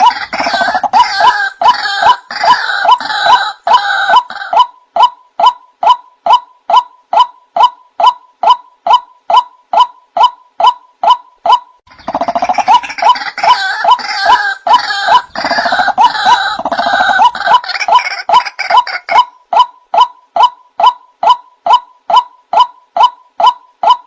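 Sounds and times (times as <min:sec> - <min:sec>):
waterhen calling harshly: 0:00.0 - 0:04.7, 0:09.8 - 0:19.4.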